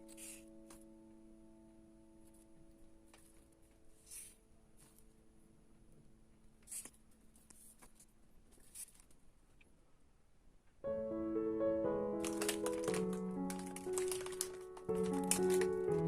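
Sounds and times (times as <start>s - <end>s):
background piano music: 0.0s - 6.2s, 10.8s - 16.0s
crackly rustling: 2.2s - 9.8s, 12.1s - 16.0s.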